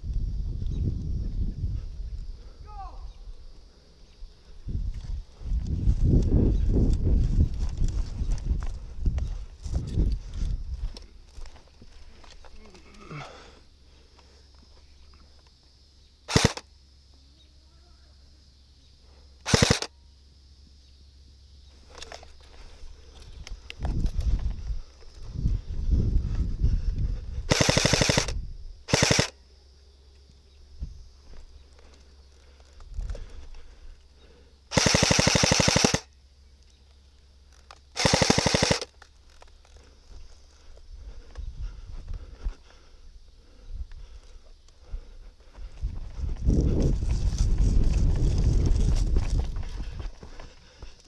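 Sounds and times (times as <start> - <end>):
airsoft gun firing: 16.3 - 16.6, 19.4 - 19.9, 27.5 - 29.4, 34.7 - 36.1, 38.0 - 38.9.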